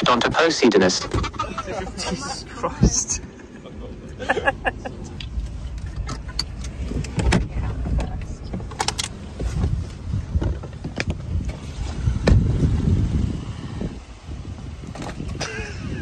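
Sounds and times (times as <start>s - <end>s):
car driving over rough ground: 0.8s - 16.0s.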